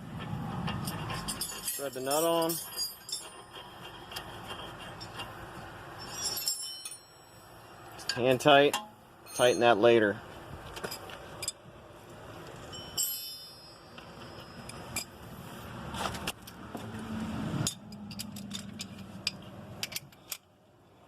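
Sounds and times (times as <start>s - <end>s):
tools and fasteners clinking: 0.7s - 10.0s, 10.6s - 11.6s, 12.5s - 15.3s, 17.6s - 20.5s
ringing metallic clink: 6.0s - 9.9s, 12.7s - 15.2s.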